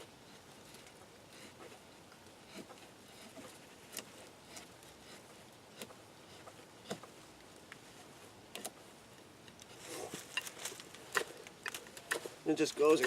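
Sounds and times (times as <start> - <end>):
knife blade shaving wood: 0.3 - 7.1.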